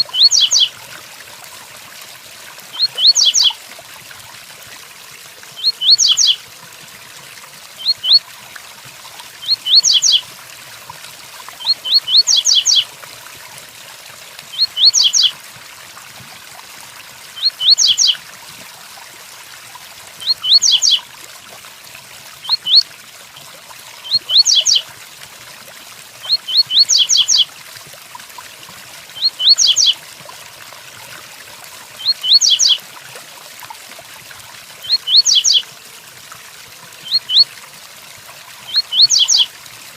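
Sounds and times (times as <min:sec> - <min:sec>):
bird singing high phrase: 0:00.1 - 0:00.7, 0:02.8 - 0:03.6, 0:05.6 - 0:06.4, 0:07.8 - 0:08.2, 0:09.4 - 0:10.2, 0:11.6 - 0:12.8, 0:14.5 - 0:15.3, 0:17.4 - 0:18.2, 0:20.2 - 0:21.0, 0:22.5 - 0:22.8, 0:24.0 - 0:24.8, 0:26.3 - 0:27.4, 0:29.2 - 0:30.0, 0:32.0 - 0:32.8, 0:34.8 - 0:35.6, 0:37.0 - 0:37.5, 0:38.7 - 0:39.5.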